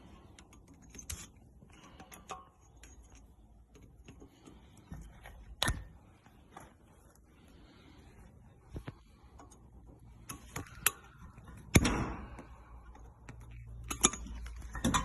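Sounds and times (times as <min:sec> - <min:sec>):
tools and metal parts clicking: 0:00.0 - 0:06.0, 0:09.2 - 0:15.0.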